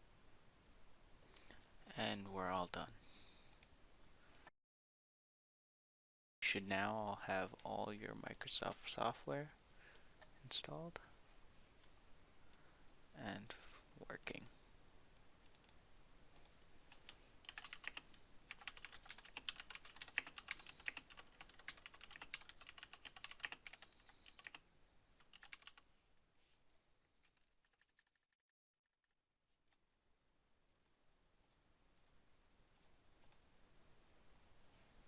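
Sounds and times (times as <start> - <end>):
keyboard typing: 16.4 - 24.6, 25.2 - 25.8, 27.6 - 28.3.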